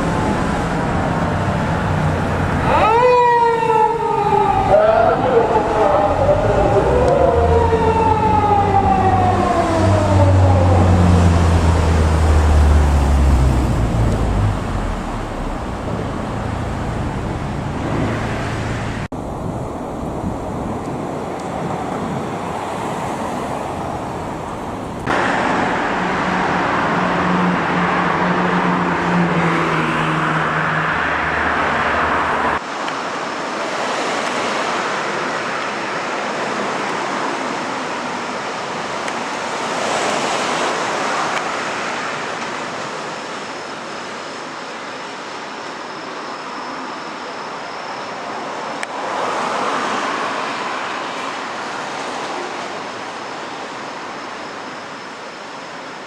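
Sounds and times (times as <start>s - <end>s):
vehicle engine hum: 0.0s - 3.0s, 4.0s - 22.4s
road traffic passing: 0.0s - 56.0s.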